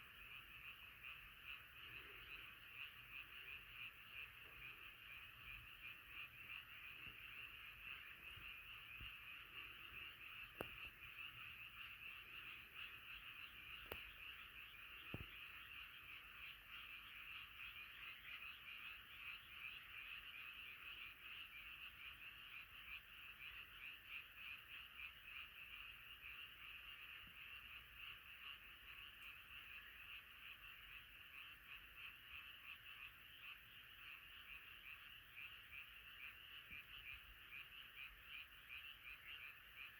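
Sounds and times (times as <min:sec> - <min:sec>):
chorus of frogs croaking: 0:00.0 - 0:39.9
faint clicks: 0:10.5 - 0:10.9, 0:13.8 - 0:14.2.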